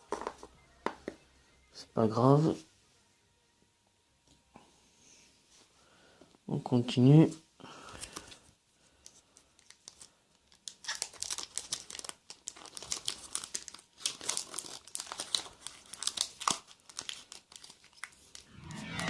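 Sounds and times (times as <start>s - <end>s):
foil wrapper crinkling and tearing: 9.6s - 18.3s.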